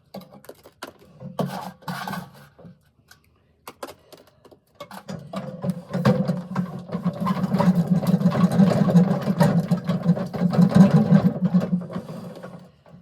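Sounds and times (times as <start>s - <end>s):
wet concrete clattering in drum: 4.9s - 12.7s
concrete mixer humming: 5.3s - 13.0s.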